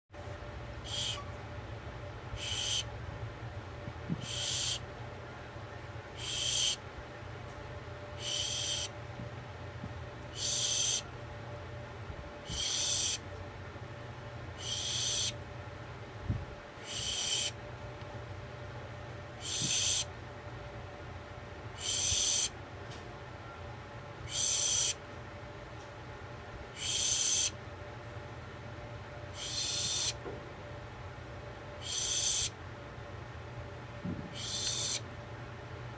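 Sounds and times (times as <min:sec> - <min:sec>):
steady low hum: 0:00.2 - 0:35.9
owl screeching: 0:00.8 - 0:01.3, 0:02.4 - 0:02.9, 0:04.2 - 0:04.8, 0:06.2 - 0:06.8, 0:08.2 - 0:09.0, 0:10.3 - 0:11.1, 0:12.4 - 0:13.2, 0:14.6 - 0:15.4, 0:16.8 - 0:17.6, 0:19.4 - 0:20.1, 0:21.8 - 0:22.5, 0:24.2 - 0:25.0, 0:26.7 - 0:27.6, 0:29.3 - 0:30.2, 0:31.8 - 0:32.6, 0:34.4 - 0:35.0.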